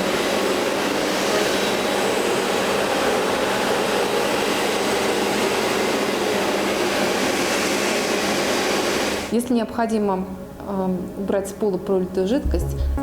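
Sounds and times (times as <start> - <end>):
vacuum cleaner sucking water: 0.0 - 9.4.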